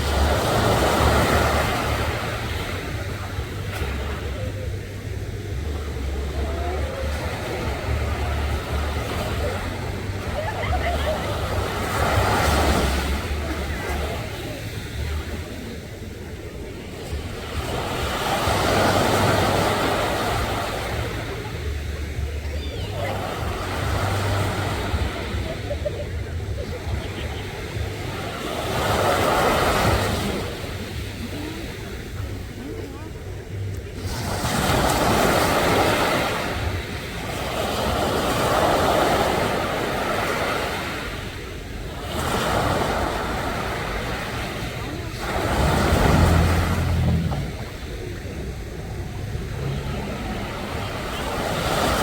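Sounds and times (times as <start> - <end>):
low surf rumble: 0.0 - 52.0
wave breaking and washing in: 0.0 - 52.0.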